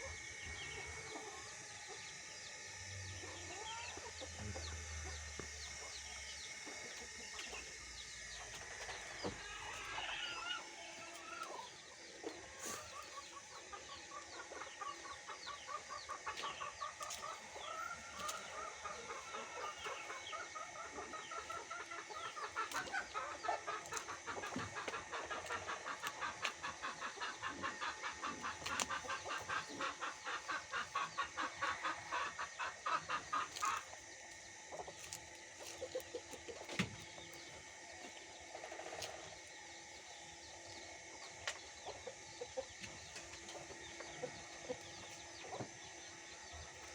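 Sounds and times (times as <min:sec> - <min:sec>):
chickens clucking: 0:00.0 - 0:46.9.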